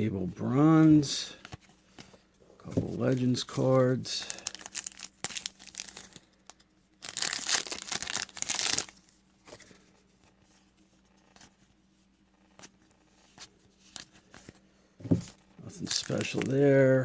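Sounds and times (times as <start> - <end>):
wrapper tearing open: 4.3 - 6.2, 7.0 - 9.0.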